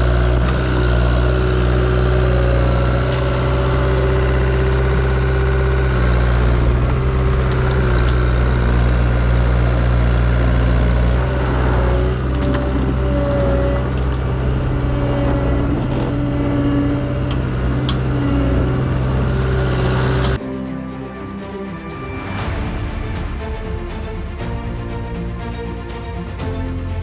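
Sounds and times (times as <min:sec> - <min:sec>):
skid steer engine running: 0:00.0 - 0:20.4.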